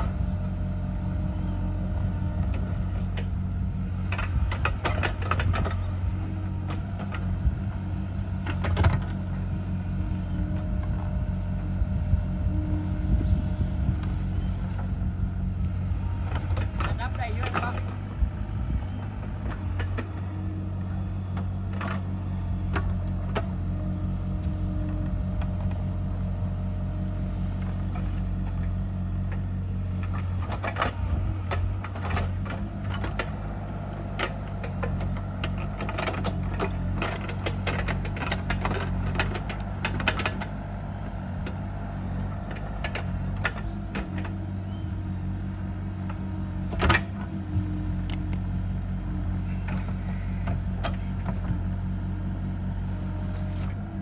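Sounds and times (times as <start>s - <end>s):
diesel engine running: 0.0s - 54.0s
machine clanks and knocks: 30.0s - 44.4s, 46.7s - 47.4s.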